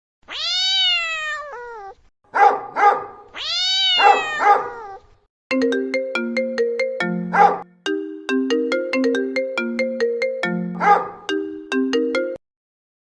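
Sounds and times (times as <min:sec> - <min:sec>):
cat meowing: 0:00.2 - 0:02.1, 0:03.3 - 0:05.2
phone ringtone melody: 0:05.5 - 0:12.4.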